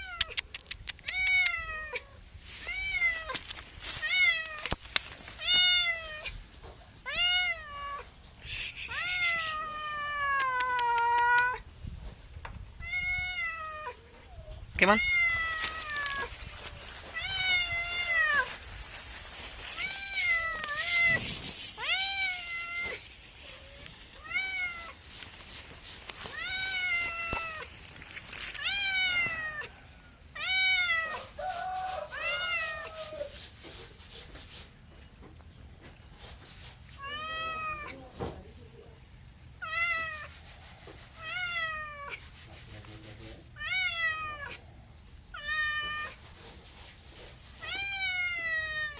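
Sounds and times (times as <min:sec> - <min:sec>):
cat meowing: 0:00.0 - 0:03.4, 0:05.4 - 0:06.4, 0:07.0 - 0:08.1, 0:08.9 - 0:11.7, 0:12.8 - 0:16.4, 0:17.2 - 0:18.6, 0:19.8 - 0:25.0, 0:26.3 - 0:27.7, 0:28.6 - 0:29.8, 0:30.4 - 0:33.3, 0:37.0 - 0:38.0, 0:39.6 - 0:40.3, 0:41.1 - 0:42.2, 0:43.6 - 0:44.6, 0:45.3 - 0:46.2, 0:47.6 - 0:48.9.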